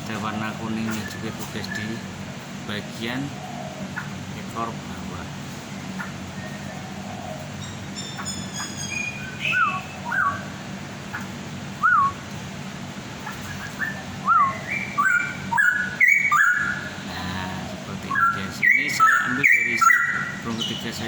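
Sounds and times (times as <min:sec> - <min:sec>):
bird singing whistled notes: 0:07.6 - 0:10.5, 0:11.8 - 0:12.2, 0:13.4 - 0:16.9, 0:18.0 - 0:21.0.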